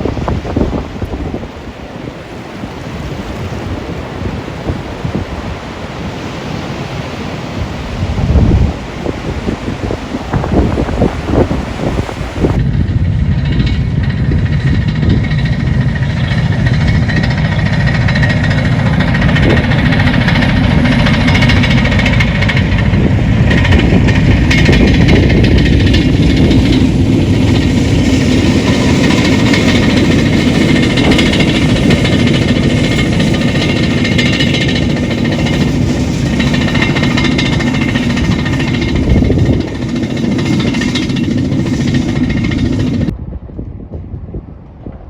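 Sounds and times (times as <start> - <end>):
engine running with rapid rattle: 8.2 - 43.1.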